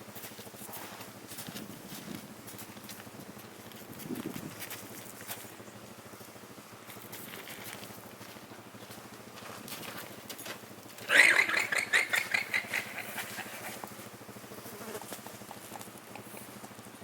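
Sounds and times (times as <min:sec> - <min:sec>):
llama alarm call: 0:11.0 - 0:13.9.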